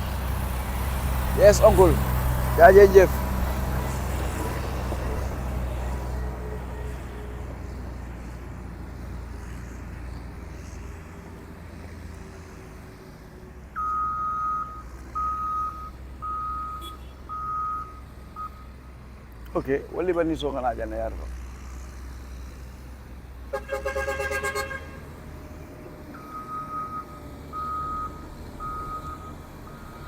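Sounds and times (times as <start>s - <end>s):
heavy vehicle engine rumbling: 0.0s - 30.0s
reversing alarm beeping: 13.8s - 18.7s, 26.2s - 30.0s.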